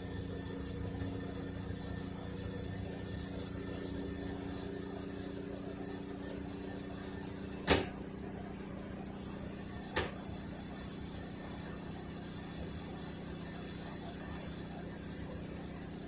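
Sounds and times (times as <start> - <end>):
washing machine spinning hum: 0.0 - 16.0
washing machine clunk: 7.6 - 8.0, 9.9 - 10.2.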